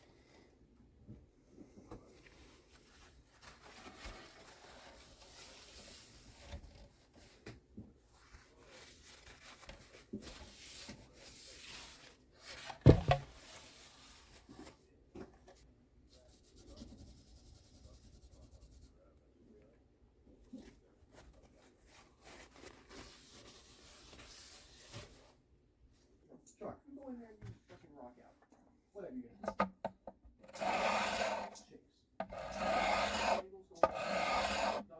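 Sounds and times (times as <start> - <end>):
hand rubbing on wooden mandolin: 32.2 - 34.9.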